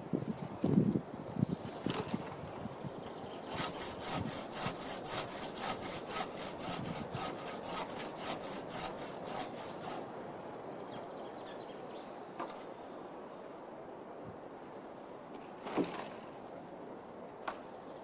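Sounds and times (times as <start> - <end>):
hand saw cutting wood: 3.4 - 10.1.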